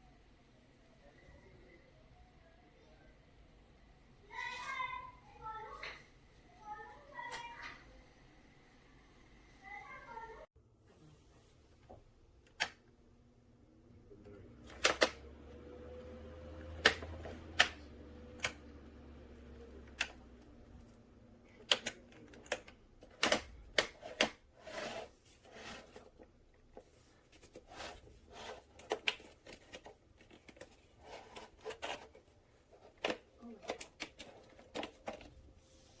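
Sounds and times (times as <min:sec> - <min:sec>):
fan motor humming low: 0:13.2 - 0:22.9.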